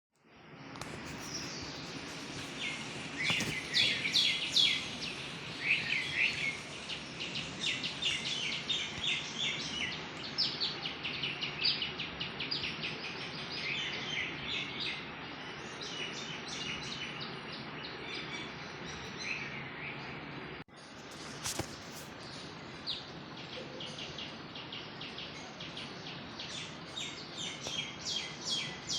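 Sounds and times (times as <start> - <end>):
steady background hiss: 0.2 - 28.9
birds chirping: 0.4 - 28.9.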